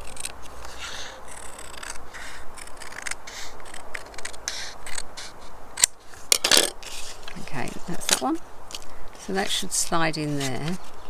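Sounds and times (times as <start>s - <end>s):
scissors snipping card: 0.0s - 5.9s
sharp clicks: 0.0s - 6.7s.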